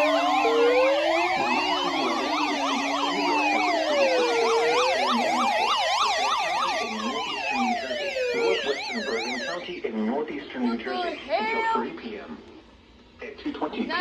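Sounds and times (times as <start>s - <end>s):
siren fast yelp: 0.0s - 9.6s
siren slow wail: 0.0s - 9.6s
low steady siren tone: 0.0s - 9.7s.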